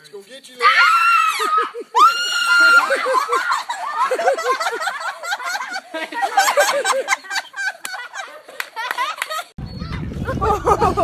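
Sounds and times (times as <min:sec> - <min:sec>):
child screaming: 0:00.6 - 0:02.8.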